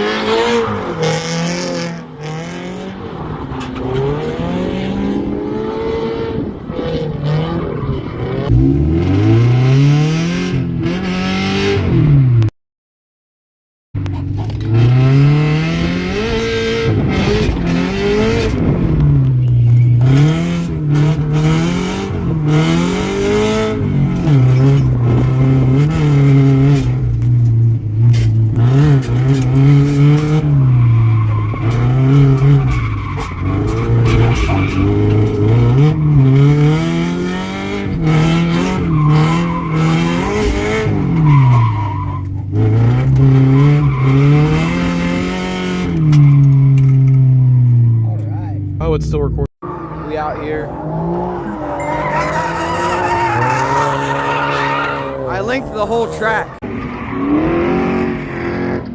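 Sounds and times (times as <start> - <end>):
car engine revving hard: 3.8 - 12.4, 14.6 - 19.3, 20.0 - 27.2, 28.2 - 47.9, 49.6 - 58.9
tyres squealing: 51.7 - 56.6.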